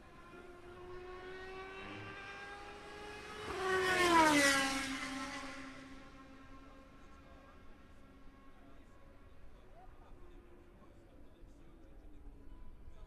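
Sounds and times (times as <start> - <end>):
race car passing at speed: 0.0 - 9.4.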